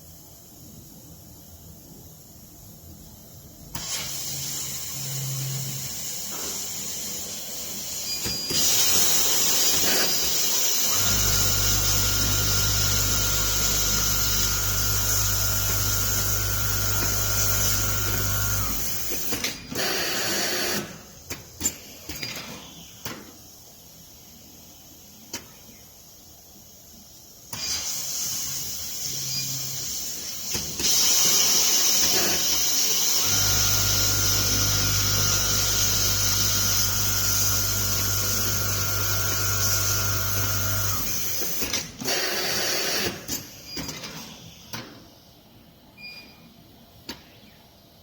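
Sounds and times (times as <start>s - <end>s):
sewing machine humming: 8.5s - 20.8s
hiss: 26.6s - 33.3s.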